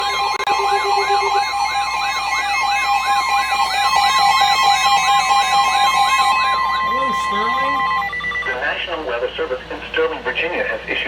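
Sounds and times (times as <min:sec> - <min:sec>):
two steady alert tones: 0:00.0 - 0:08.8
warbling siren tone: 0:00.0 - 0:08.8.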